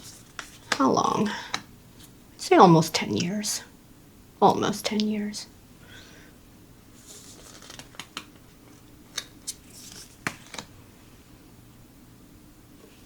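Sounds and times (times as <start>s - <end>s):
cards sliding: 7.0s - 8.4s, 9.1s - 10.7s.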